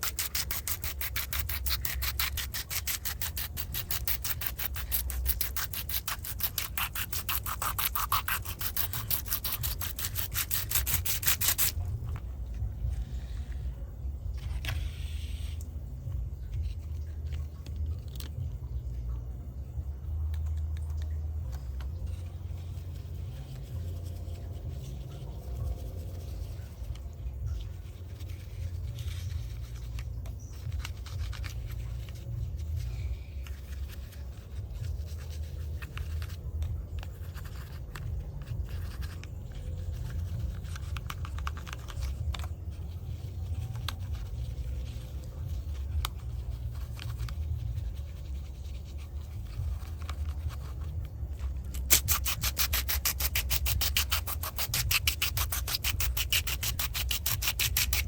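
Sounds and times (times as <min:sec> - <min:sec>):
fast even rubbing: 0:00.0 - 0:13.3, 0:21.9 - 0:58.0
scratching and scraping: 0:00.0 - 0:58.0
low rumble: 0:11.7 - 0:51.9.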